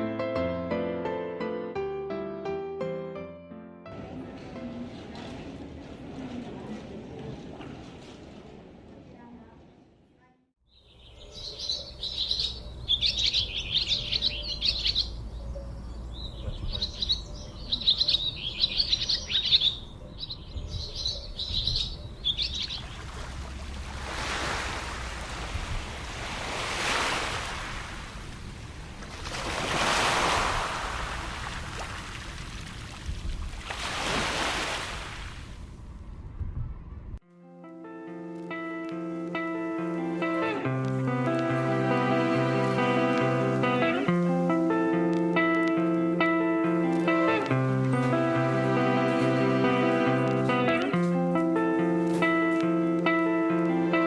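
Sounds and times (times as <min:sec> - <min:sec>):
small birds chirping: 0:10.7 - 0:23.1.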